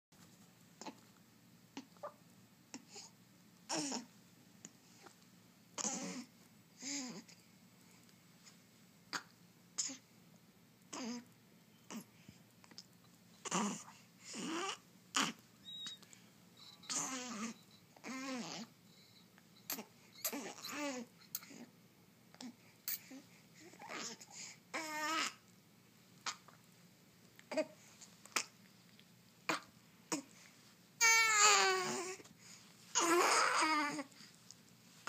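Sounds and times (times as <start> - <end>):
baby squeaking and humming: 13.4 - 16.0, 16.6 - 18.7, 19.6 - 21.6, 31.0 - 32.2, 33.0 - 34.1.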